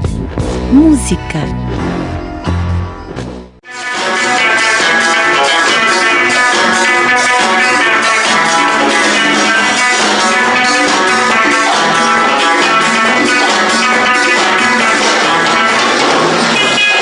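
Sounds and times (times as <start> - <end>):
guitar music: 0.0 - 17.0
steady drum beat: 8.0 - 17.0.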